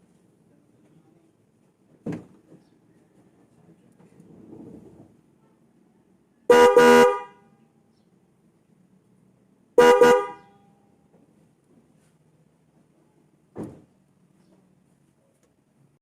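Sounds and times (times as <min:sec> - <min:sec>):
car horn double honk: 0:06.5 - 0:07.5, 0:09.8 - 0:10.8.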